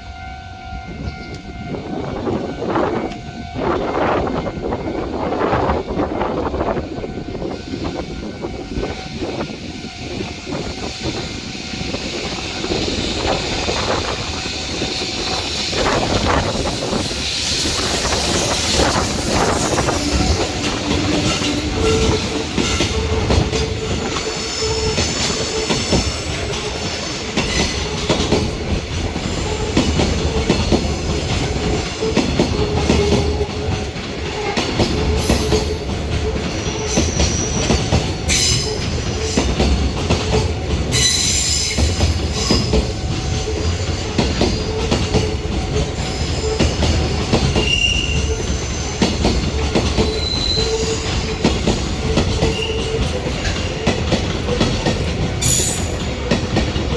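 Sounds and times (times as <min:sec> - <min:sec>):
high-pitched wheel squeal: 0:23.8 - 0:26.4, 0:40.9 - 0:43.0, 0:46.0 - 0:49.2, 0:50.0 - 0:51.4.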